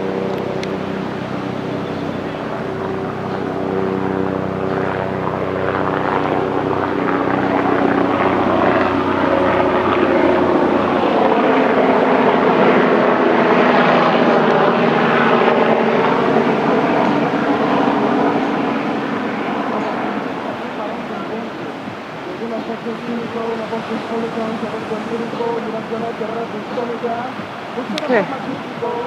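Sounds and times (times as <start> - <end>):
aircraft engine hum: 0.0 - 29.0
aircraft rushing noise: 0.0 - 29.0.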